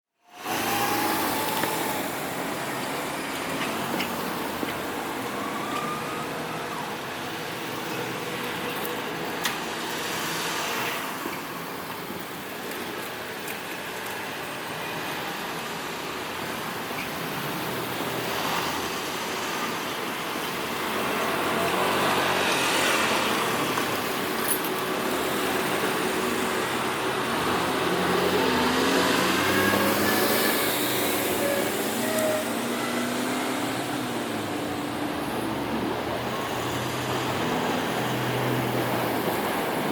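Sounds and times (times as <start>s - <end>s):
road traffic: 0.1s - 39.9s
whining motor tones: 0.4s - 4.1s.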